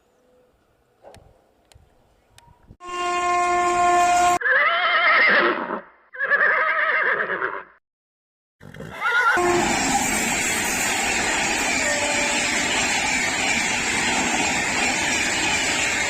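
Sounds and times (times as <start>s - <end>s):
locomotive air horn: 2.8s - 4.4s, 9.3s - 10.2s, 11.7s - 12.8s
horse neighing: 4.4s - 7.8s, 8.6s - 9.4s
passing train rushing: 9.4s - 16.0s.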